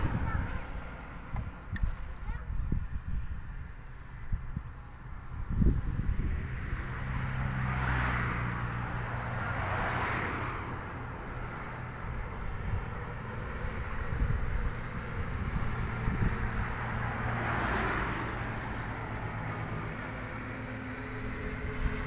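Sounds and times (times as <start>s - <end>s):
rushing tyre noise: 0.0s - 22.0s
engine humming: 4.9s - 22.0s.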